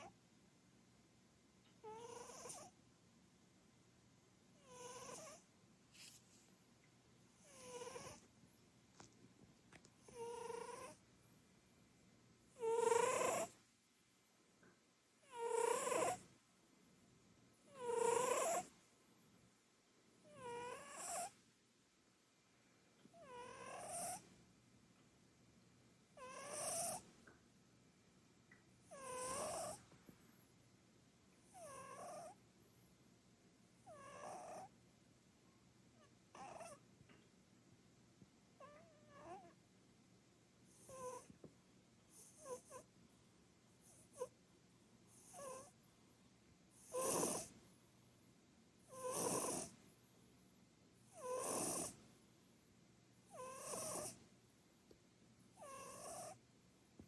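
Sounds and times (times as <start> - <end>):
cat snoring: 1.8 - 2.8, 4.6 - 5.5, 7.4 - 8.2, 10.0 - 11.0, 12.6 - 13.6, 15.2 - 16.3, 17.7 - 18.7, 20.2 - 21.4, 23.1 - 24.2, 26.2 - 27.0, 28.8 - 29.9, 31.5 - 32.4, 33.8 - 34.8, 36.0 - 36.8, 38.6 - 39.5, 40.7 - 41.3, 42.1 - 42.9, 43.8 - 44.3, 45.1 - 45.8, 46.7 - 47.6, 48.8 - 49.9, 51.1 - 52.4, 53.3 - 54.6, 55.6 - 56.4.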